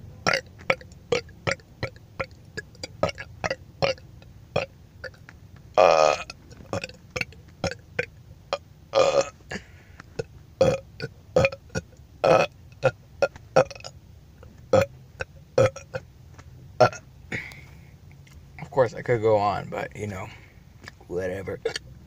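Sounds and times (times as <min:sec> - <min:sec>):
person burping: 0:00.2 - 0:04.0, 0:05.8 - 0:08.1, 0:09.0 - 0:13.9, 0:14.7 - 0:16.0, 0:16.8 - 0:17.7, 0:21.6 - 0:21.8.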